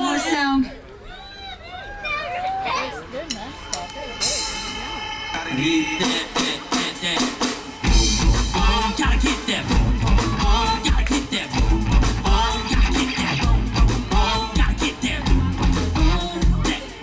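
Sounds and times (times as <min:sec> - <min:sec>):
live band playing dance music: 0:02.8 - 0:17.0
heavy bass drum beat: 0:06.0 - 0:17.0.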